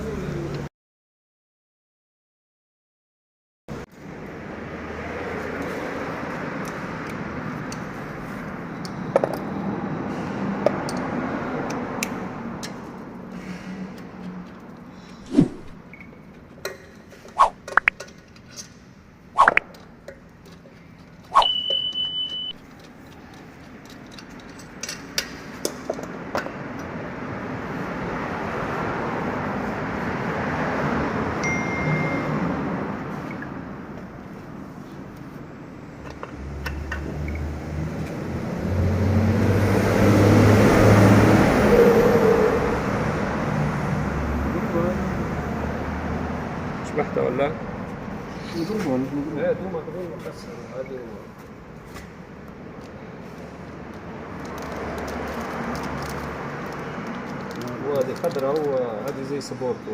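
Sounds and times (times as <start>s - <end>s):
road and tyre noise: 0.0s - 0.7s, 3.7s - 59.9s
short steady beep: 21.4s - 22.6s, 31.4s - 32.4s.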